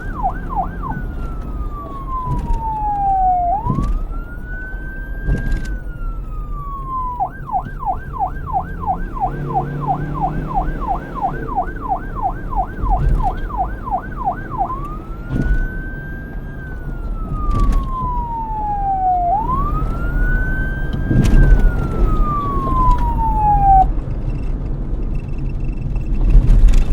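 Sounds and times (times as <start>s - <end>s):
police siren wailing and yelping: 0.0s - 24.0s.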